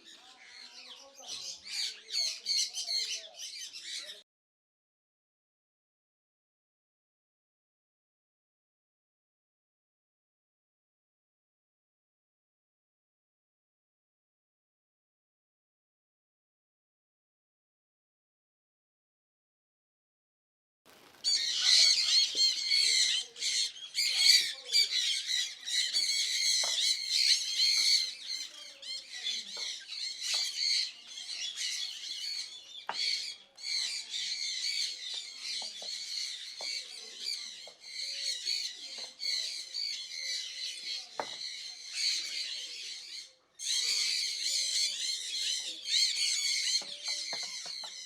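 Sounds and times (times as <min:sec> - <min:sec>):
birds chattering and squawking: 0:00.0 - 0:04.2, 0:20.9 - 0:48.0.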